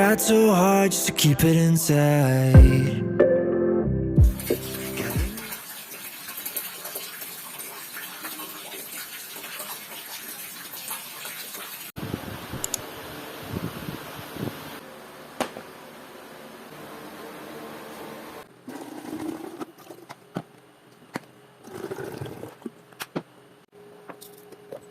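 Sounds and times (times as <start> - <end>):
tap water running: 4.4 - 12.0
sharp click: 12.6 - 12.8.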